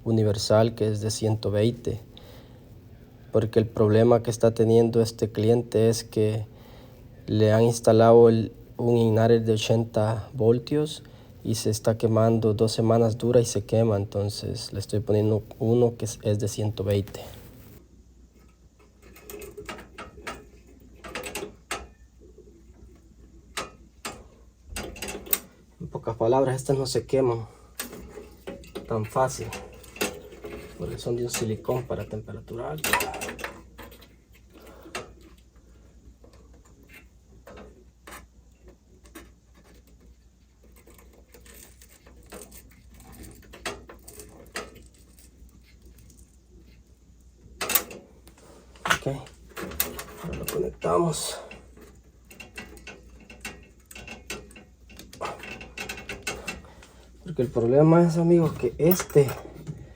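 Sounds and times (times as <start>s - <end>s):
steady low hum: 0.0s - 37.8s
small parts clicking and rattling: 27.8s - 57.6s, 58.4s - 59.8s.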